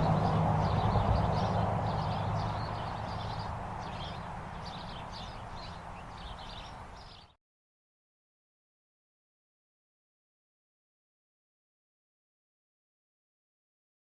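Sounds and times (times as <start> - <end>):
passing vehicle rumble: 0.0 - 7.3
birds chirping: 0.0 - 7.4.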